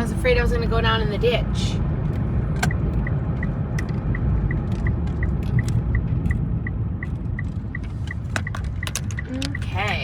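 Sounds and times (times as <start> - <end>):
car engine rumble: 0.0 - 10.0
high electronic ticking: 2.7 - 9.8.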